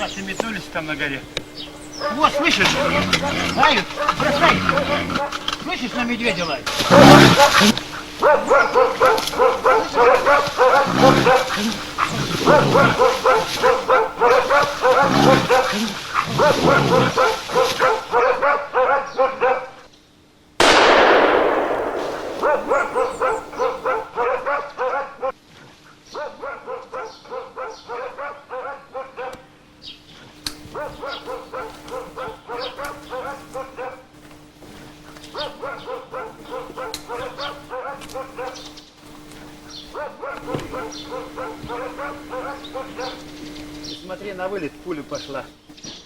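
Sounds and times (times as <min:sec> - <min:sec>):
dogs barking: 0:01.9 - 0:05.4, 0:06.7 - 0:19.9, 0:20.6 - 0:25.4, 0:26.1 - 0:29.5, 0:30.7 - 0:34.1, 0:35.3 - 0:38.8, 0:39.8 - 0:43.3
gunshot echoing: 0:20.6 - 0:24.2.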